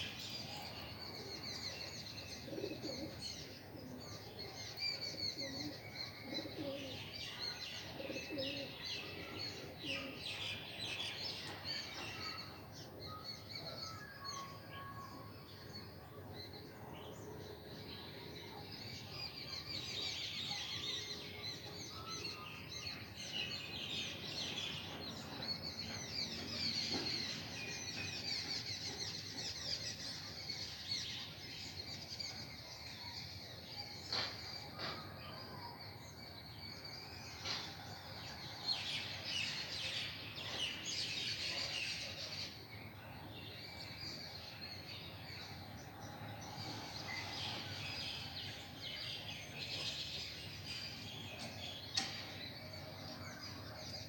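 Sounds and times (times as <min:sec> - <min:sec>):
small birds chirping: 0:00.0 - 0:16.4.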